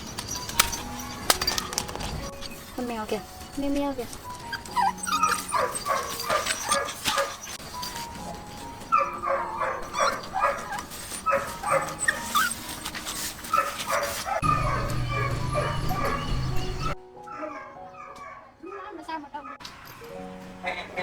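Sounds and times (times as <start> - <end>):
dog whimpering: 4.1 - 19.6
small dog yapping: 4.4 - 7.6, 8.9 - 19.6.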